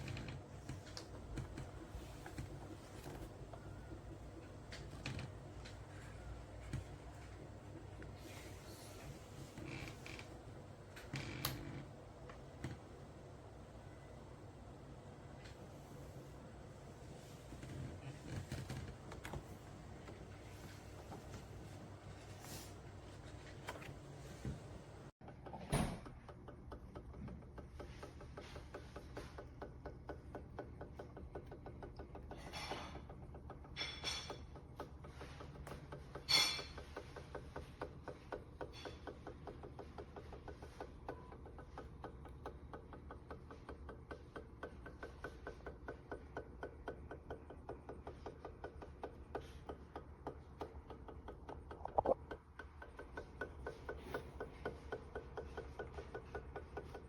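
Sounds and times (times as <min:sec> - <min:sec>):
laminator gear ticking: 0:25.2 - 0:57.0.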